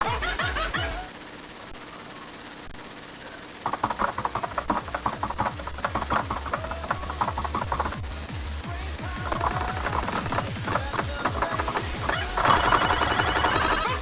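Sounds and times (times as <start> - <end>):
electronic music: 3.6 - 14.0.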